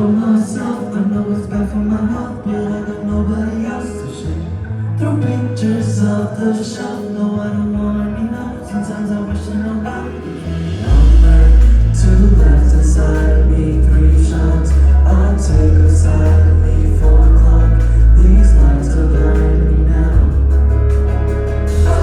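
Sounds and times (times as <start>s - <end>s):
live band playing pop song: 0.0s - 22.0s
person singing: 0.0s - 22.0s
heavy loud bass: 10.4s - 22.0s.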